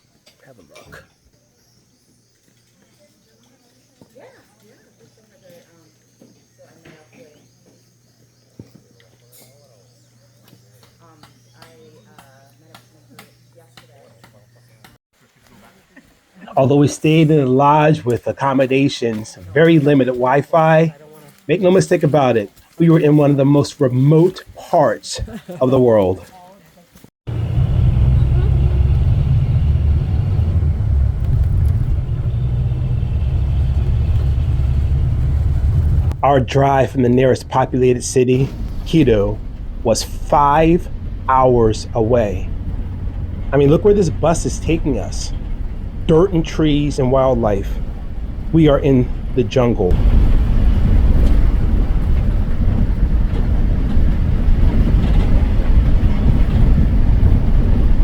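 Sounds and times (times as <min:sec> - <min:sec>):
bus engine and road rumble: 0:27.3 - 0:58.0.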